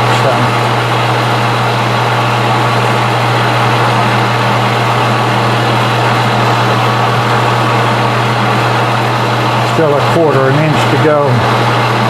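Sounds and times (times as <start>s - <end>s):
metal lathe running: 0.0s - 12.0s.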